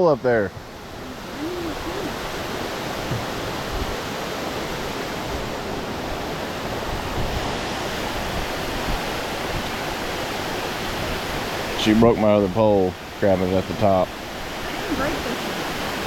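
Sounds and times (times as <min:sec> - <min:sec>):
river water rushing: 0:00.0 - 0:16.0.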